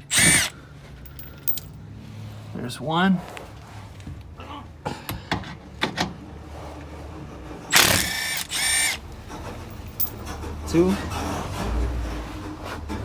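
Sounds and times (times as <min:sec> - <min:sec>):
power tool motor whine: 0:00.0 - 0:00.5, 0:07.7 - 0:09.0.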